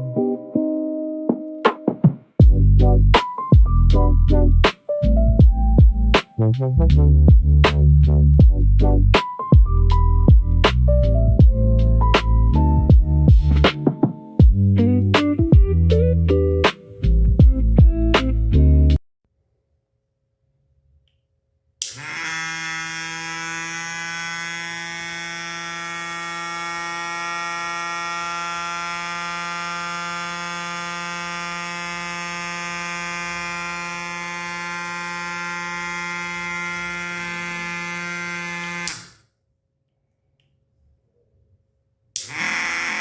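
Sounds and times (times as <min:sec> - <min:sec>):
small fan motor humming: 0:21.8 - 0:39.2, 0:42.2 - 0:43.0.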